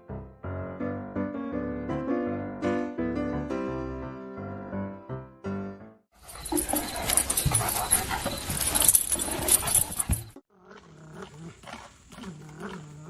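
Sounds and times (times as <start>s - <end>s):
dog whining: 6.2s - 10.4s.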